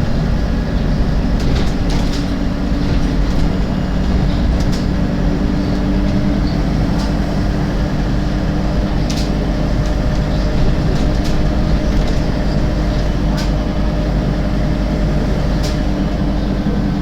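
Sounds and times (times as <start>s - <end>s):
bus engine drone: 0.0s - 17.0s.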